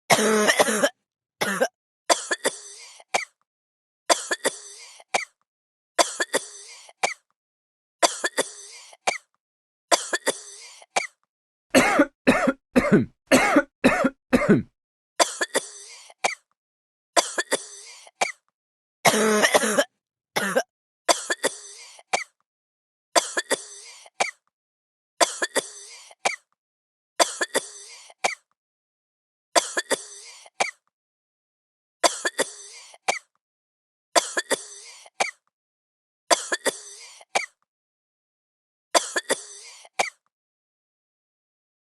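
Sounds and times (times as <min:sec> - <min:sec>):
person coughing: 0:00.1 - 0:03.4, 0:11.8 - 0:16.4, 0:19.1 - 0:22.4, 0:39.0 - 0:40.2.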